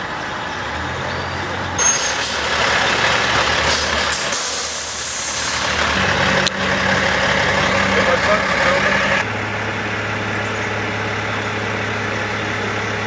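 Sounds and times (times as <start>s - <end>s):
diesel truck engine running: 0.0s - 13.0s
air brake hiss: 1.8s - 2.6s, 3.6s - 5.7s.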